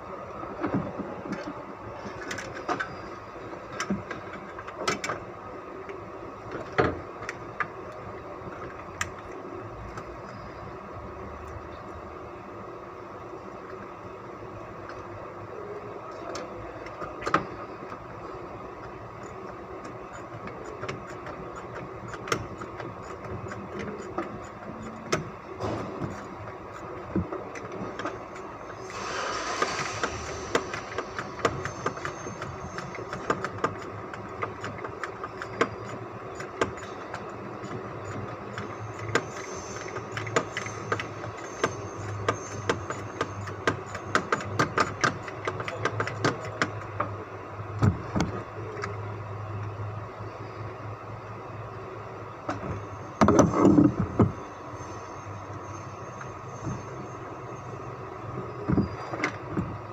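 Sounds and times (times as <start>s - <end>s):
brief hissing swell: 28.8s - 32.4s.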